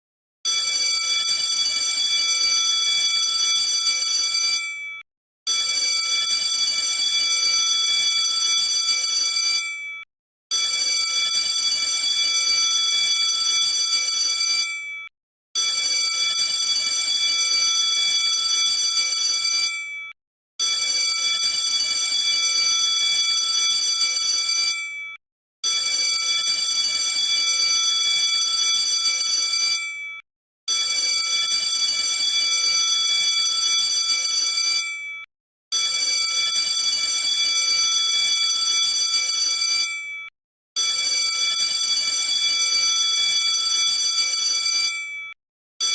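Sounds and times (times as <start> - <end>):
electric alarm bell ringing: 0.5 - 5.0, 5.6 - 10.0, 10.6 - 15.1, 15.7 - 20.2, 20.8 - 25.2, 25.8 - 30.2, 30.8 - 35.3, 35.9 - 40.3, 40.9 - 45.9.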